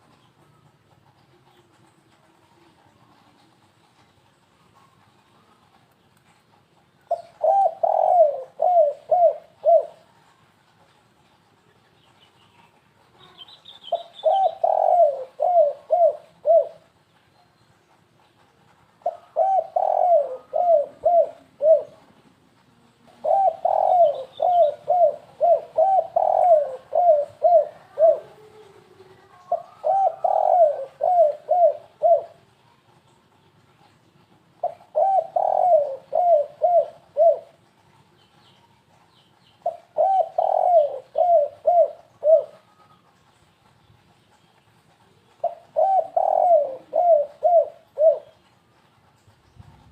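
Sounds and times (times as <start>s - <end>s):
dove cooing: 7.1s - 10.2s, 13.2s - 17.0s, 19.0s - 22.2s, 23.1s - 32.5s, 34.6s - 37.6s, 39.6s - 43.1s, 45.2s - 48.4s.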